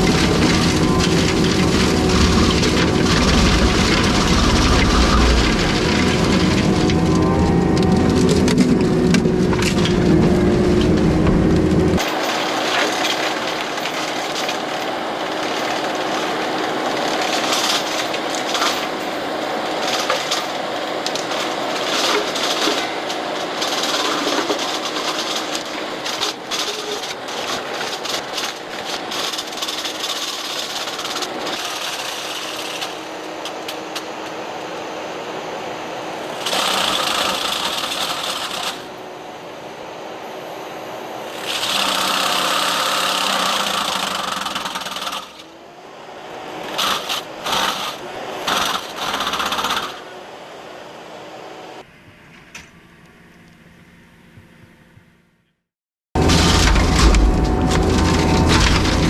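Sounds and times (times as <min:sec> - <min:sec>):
brush crackling and splintering: 0:00.0 - 0:12.1, 0:56.2 - 0:59.0
engine and flail mower drone: 0:00.0 - 0:55.5, 0:56.2 - 0:59.0.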